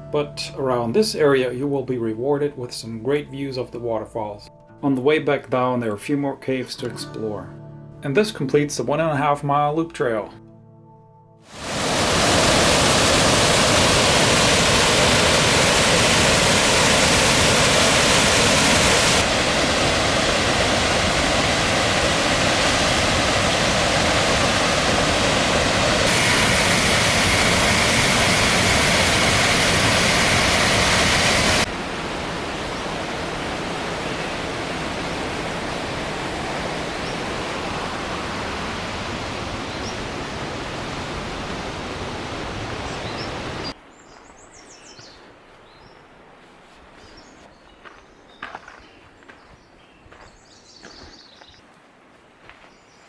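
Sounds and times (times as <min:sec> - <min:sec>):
waterfall rushing: 0:11.5 - 0:43.8.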